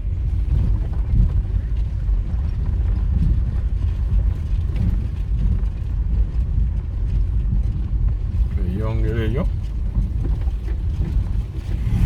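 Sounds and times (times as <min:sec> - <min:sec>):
wind buffeting microphone: 0:00.0 - 0:12.0
vehicle rumble: 0:09.9 - 0:12.0.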